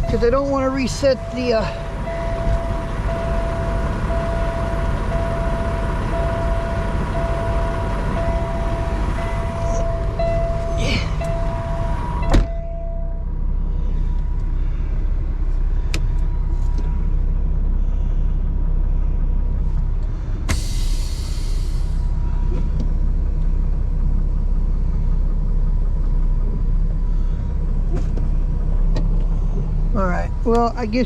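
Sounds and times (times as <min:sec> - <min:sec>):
diesel truck engine idling: 0:00.0 - 0:31.0
air brake hiss: 0:20.5 - 0:22.2.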